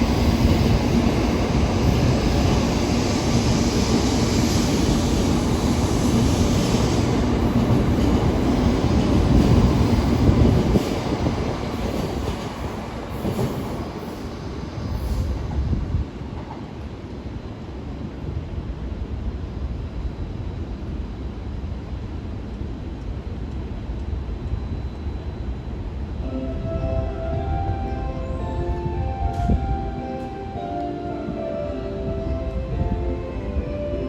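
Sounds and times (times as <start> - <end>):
train wheels rumbling on rails: 0.0 - 26.2.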